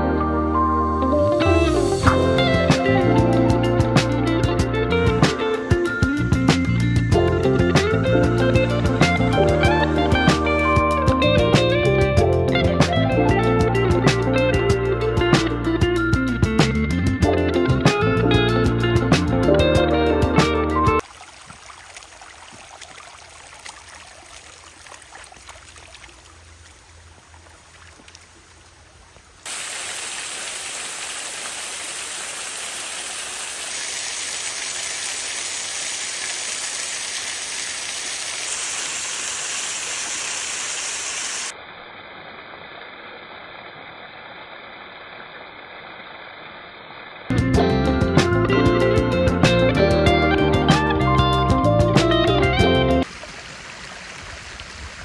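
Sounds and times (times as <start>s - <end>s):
waterfall and stream rushing: 21.0s - 41.6s.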